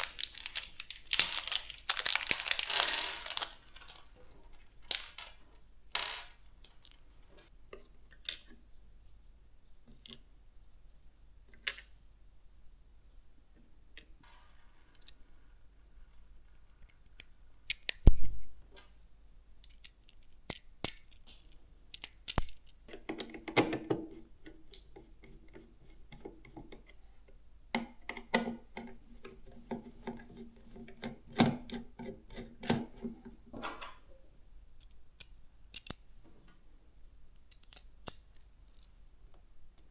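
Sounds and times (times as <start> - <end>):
rubbing of parts: 0.0 - 4.4, 28.6 - 36.1
clicks of plastic and metal parts: 19.6 - 24.0.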